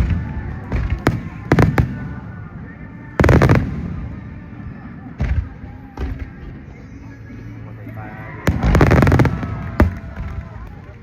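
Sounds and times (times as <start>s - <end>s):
fireworks exploding and crackling: 0.0s - 6.3s, 8.5s - 11.0s.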